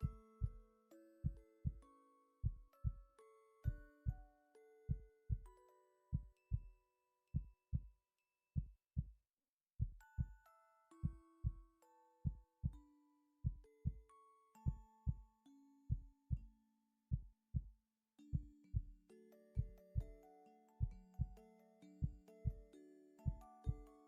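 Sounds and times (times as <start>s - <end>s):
soft chime-like music: 0.0s - 8.7s, 10.0s - 17.0s, 18.2s - 24.0s
heartbeat thumps: 9.8s - 10.3s.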